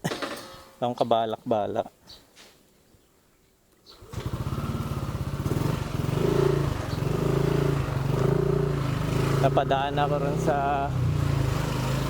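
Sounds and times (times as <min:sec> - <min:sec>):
motorcycle engine running: 0:03.9 - 0:12.0.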